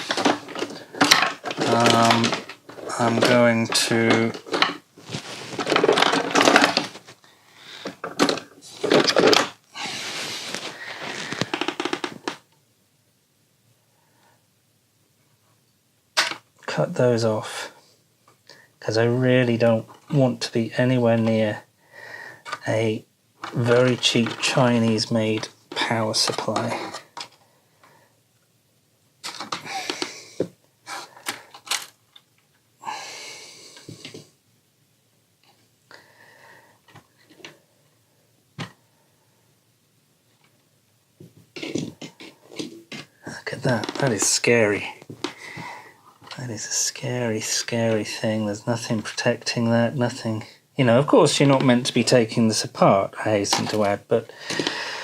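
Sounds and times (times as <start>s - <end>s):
objects clattering and rustling: 0.0s - 12.4s, 23.4s - 28.0s, 29.2s - 32.5s, 41.2s - 46.5s, 53.4s - 55.0s.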